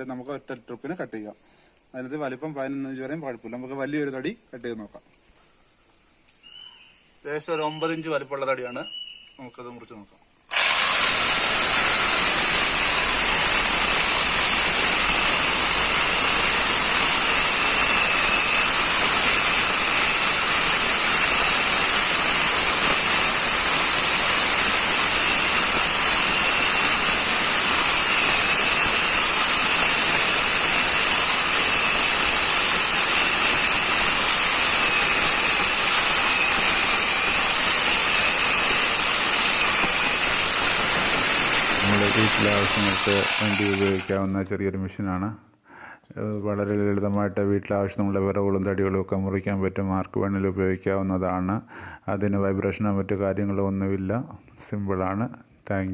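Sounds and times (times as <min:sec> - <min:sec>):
chainsaw chain cutting log: 0:10.5 - 0:44.4.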